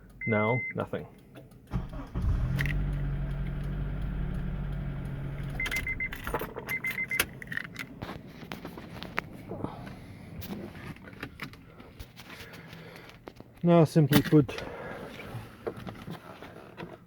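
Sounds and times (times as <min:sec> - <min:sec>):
car engine starting and idling: 0:01.4 - 0:08.0
short high beeps: 0:05.4 - 0:07.2
keys jingling and clicking: 0:05.7 - 0:08.0.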